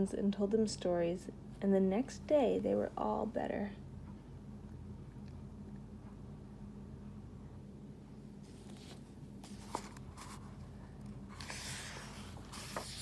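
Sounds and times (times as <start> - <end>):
faint steady low hum: 0.0 - 13.0
paper page rustling: 8.4 - 10.7, 11.3 - 13.0.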